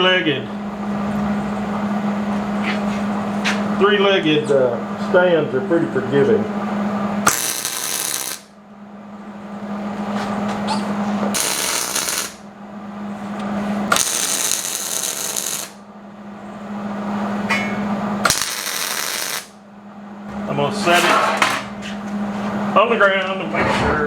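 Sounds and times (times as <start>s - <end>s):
welding arc buzzing crackle: 7.2s - 8.6s, 11.3s - 12.5s, 13.9s - 15.8s, 18.2s - 19.6s.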